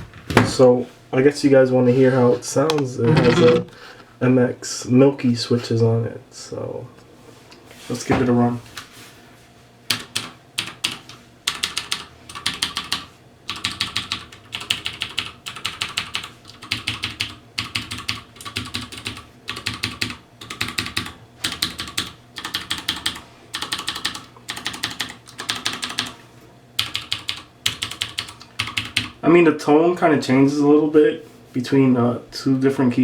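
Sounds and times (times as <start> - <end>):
mechanical keyboard typing: 9.9 - 26.2, 26.8 - 29.2.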